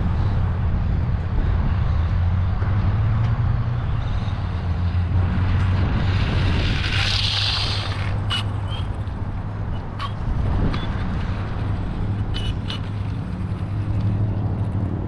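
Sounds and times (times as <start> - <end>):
wind buffeting microphone: 0.0 - 15.0
rc car motor hissing past: 6.4 - 8.9.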